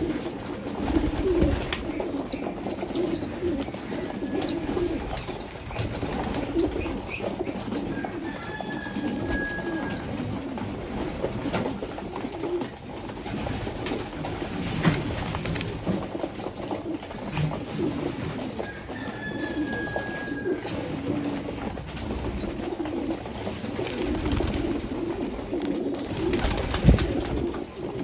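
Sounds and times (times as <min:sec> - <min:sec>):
pigeons cooing: 0:00.0 - 0:28.0.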